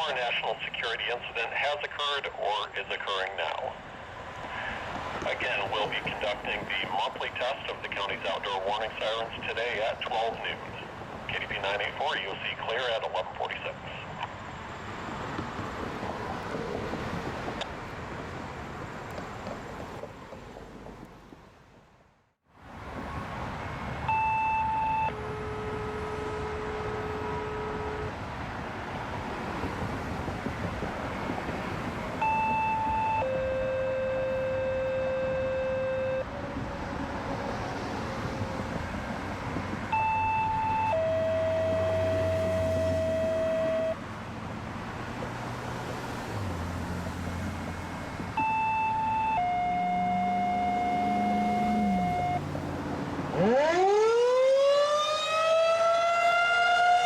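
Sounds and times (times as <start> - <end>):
highway traffic noise: 0.0 - 57.0
two-tone paging tones: 24.1 - 28.1, 32.2 - 36.2, 39.9 - 44.0, 48.4 - 52.4.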